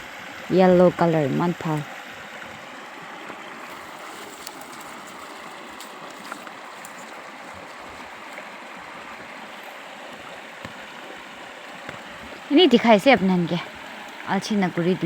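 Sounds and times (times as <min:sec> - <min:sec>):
flowing water rushing: 0:00.0 - 0:15.0
faint ticks: 0:04.3 - 0:07.2.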